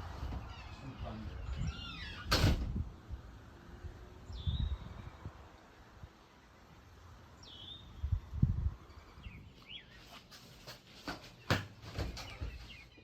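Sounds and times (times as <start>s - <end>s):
bird chirping: 0.4s - 2.3s, 4.2s - 5.3s, 6.4s - 8.2s, 8.8s - 10.4s, 11.2s - 13.0s.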